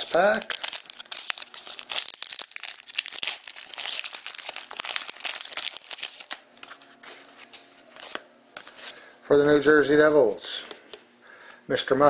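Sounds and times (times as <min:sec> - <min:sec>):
card pack wrapper tearing and crinkling: 0:00.0 - 0:06.8.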